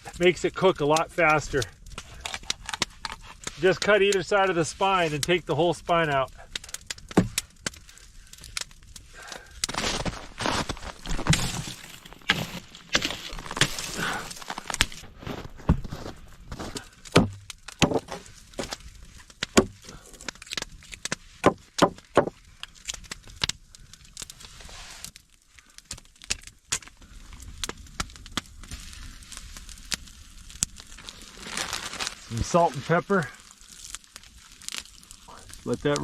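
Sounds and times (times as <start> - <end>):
chicken bones cracking and snapping: 1.6 - 3.6, 6.4 - 15.0, 16.8 - 24.4, 25.2 - 32.2, 33.3 - 36.0.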